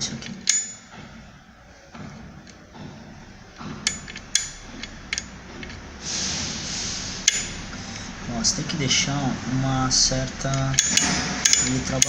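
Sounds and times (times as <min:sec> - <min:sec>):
ratchet mechanism metal clicks: 0:00.0 - 0:01.0, 0:03.6 - 0:05.8, 0:07.2 - 0:07.7, 0:09.9 - 0:12.0
hissing rush: 0:00.0 - 0:12.0.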